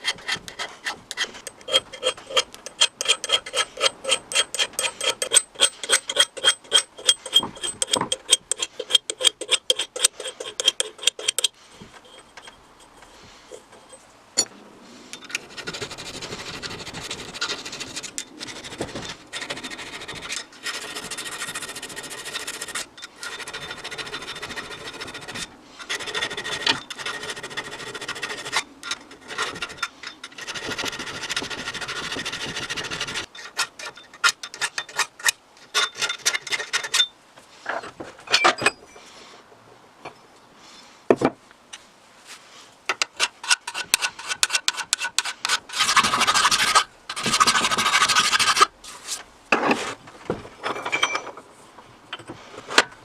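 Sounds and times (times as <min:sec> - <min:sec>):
abrasive rubbing on metal: 0:00.0 - 0:14.0.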